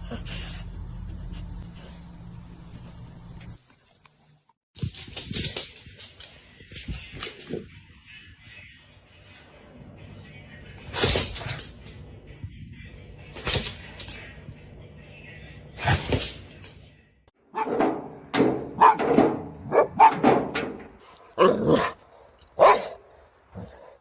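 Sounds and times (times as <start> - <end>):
dog barking: 18.8 - 20.3, 22.6 - 23.0.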